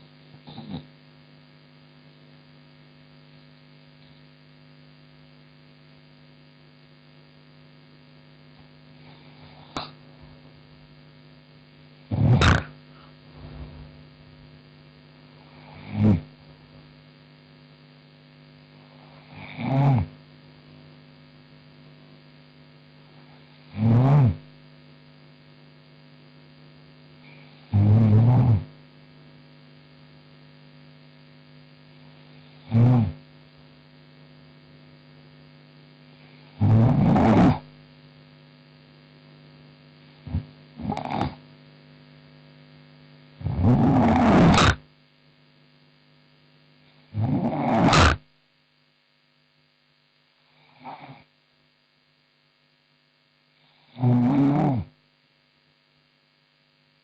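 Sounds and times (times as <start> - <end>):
electrical mains hum: 0.0 - 57.0
woman snoring: 0.3 - 0.9, 8.9 - 10.8, 12.1 - 14.4, 15.4 - 16.6, 18.8 - 20.2, 23.2 - 24.4, 27.2 - 28.7, 32.4 - 33.2, 36.3 - 37.7, 40.2 - 41.4, 43.4 - 44.8, 47.1 - 48.2, 50.5 - 51.3, 53.6 - 55.0.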